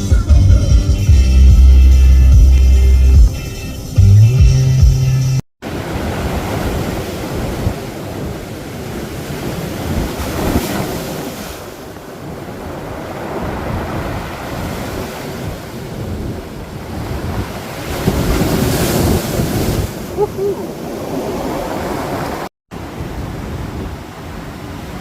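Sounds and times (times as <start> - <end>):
surf breaking on beach: 5.6 - 25.0
wind buffeting microphone: 5.8 - 25.0.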